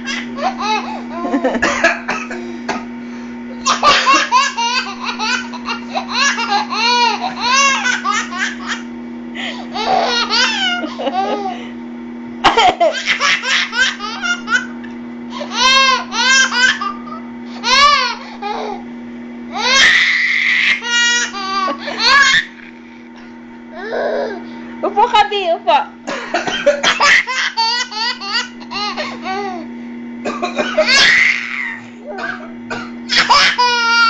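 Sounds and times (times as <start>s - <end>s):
baby laughing: 0.0s - 1.7s, 3.6s - 11.6s, 12.4s - 18.8s, 19.5s - 22.8s, 26.8s - 29.6s, 33.1s - 34.0s.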